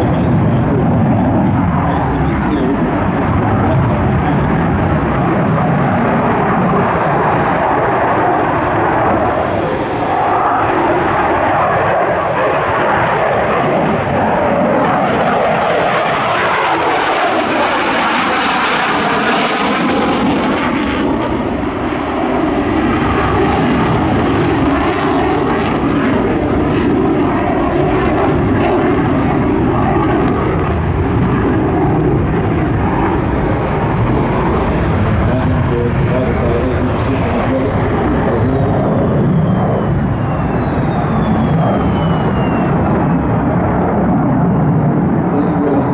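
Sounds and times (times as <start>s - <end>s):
jet engine roaring: 0.0s - 45.9s.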